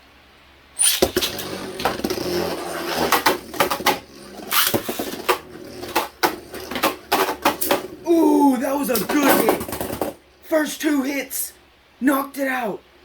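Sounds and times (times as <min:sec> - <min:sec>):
spinning top launcher zip: 0:00.8 - 0:10.2
spinning tops whirring: 0:00.8 - 0:10.2
tops clacking together: 0:00.8 - 0:10.2.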